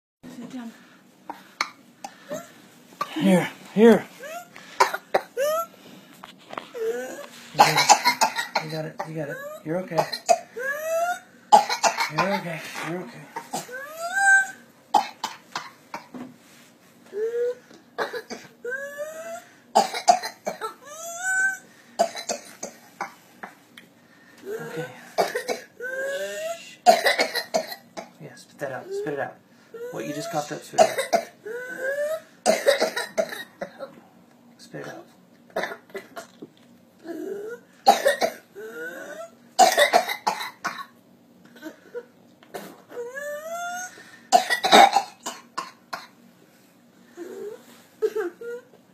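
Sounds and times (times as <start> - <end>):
harsh rapid coughing: 1.3 - 5.7, 6.7 - 14.2, 24.5 - 28.2, 30.0 - 33.9, 37.9 - 38.5, 44.3 - 46.1
short sharp coughs: 7.6 - 9.2.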